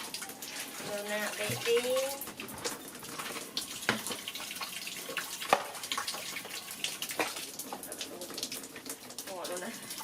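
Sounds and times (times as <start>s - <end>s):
bath water splashing: 0.0s - 10.0s.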